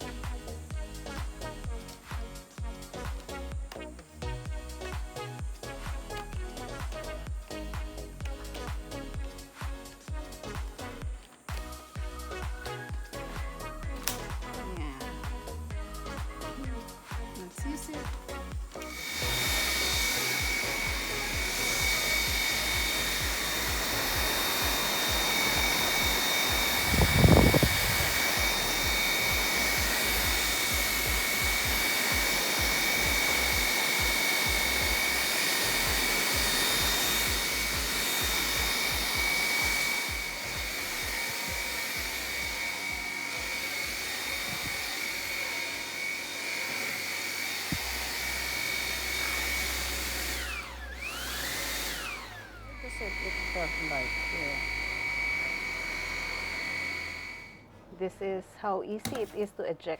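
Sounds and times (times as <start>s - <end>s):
handheld vacuum cleaner whine: 0.0s - 57.7s, 59.0s - 59.5s.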